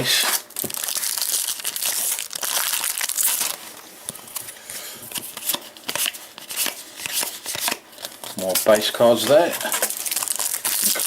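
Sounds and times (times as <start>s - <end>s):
card pack wrapper crinkling: 0.0s - 3.8s, 5.1s - 11.0s
cards being handled: 5.1s - 11.0s.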